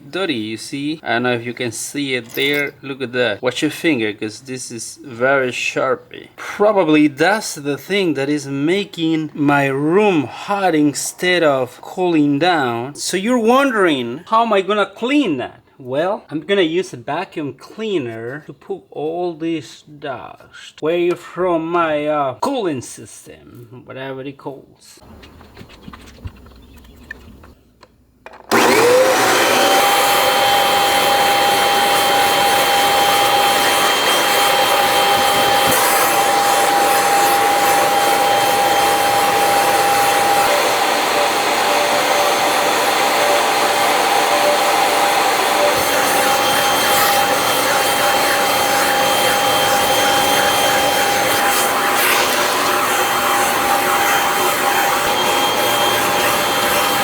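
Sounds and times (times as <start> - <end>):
vacuum cleaner running: 28.3 - 57.0.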